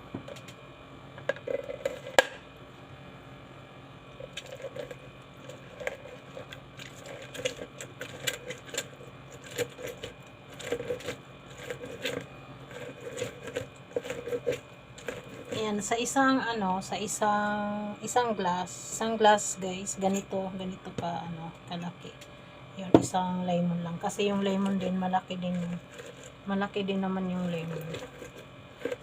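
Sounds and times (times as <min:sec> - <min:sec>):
citrus juicer clicks and scrapes: 0:01.2 - 0:02.4, 0:04.2 - 0:16.2, 0:24.4 - 0:26.5, 0:27.3 - 0:29.0.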